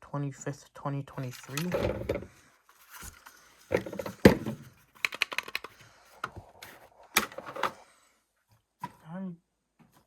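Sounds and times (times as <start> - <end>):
plastic clicks: 5.0 - 6.4.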